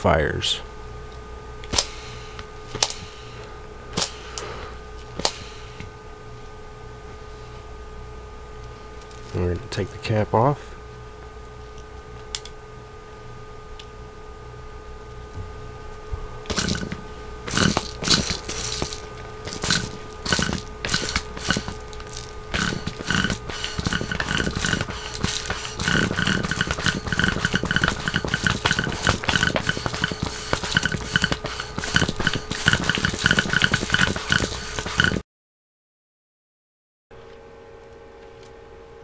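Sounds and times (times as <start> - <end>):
air pump puffs with squeaks: 1.7 - 5.8, 16.5 - 35.2.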